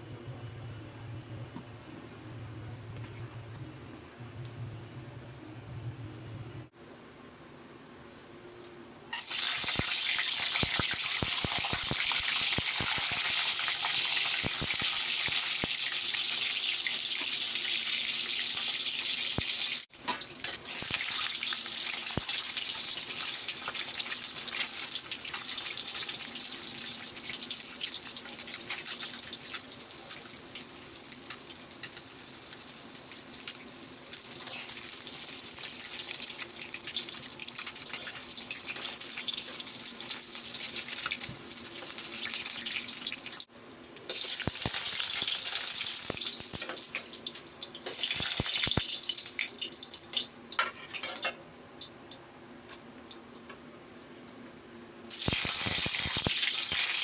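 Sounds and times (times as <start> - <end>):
food sizzling in hot oil: 9.1 - 51.2, 55.1 - 57.0.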